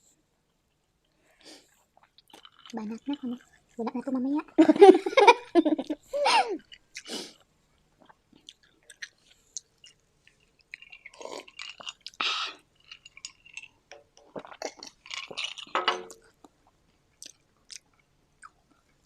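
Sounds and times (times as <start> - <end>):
chewing with wet mouth smacks: 1.7 - 4.2, 6.6 - 19.0.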